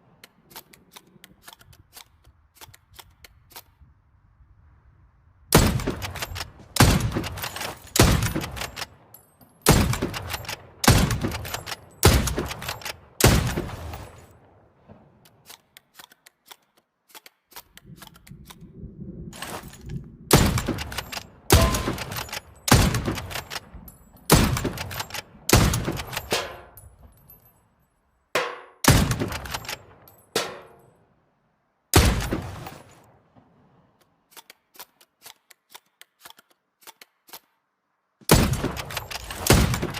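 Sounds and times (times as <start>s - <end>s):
rifle shots: 5.5s - 9.0s, 9.6s - 14.4s, 19.4s - 26.8s, 28.4s - 30.8s, 31.9s - 33.0s, 38.3s - 39.9s.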